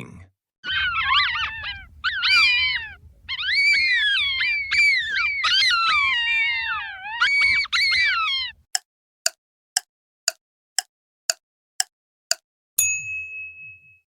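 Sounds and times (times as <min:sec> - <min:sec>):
jackals howling and yipping: 0:00.6 - 0:08.6.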